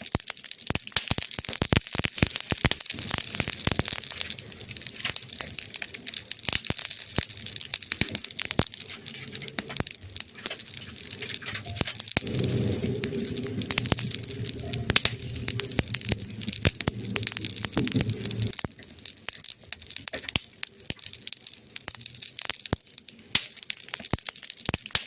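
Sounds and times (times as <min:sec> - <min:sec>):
campfire crackling: 0:00.0 - 0:25.0
sharp fire cracks: 0:00.0 - 0:25.0
low rumble: 0:08.5 - 0:18.8.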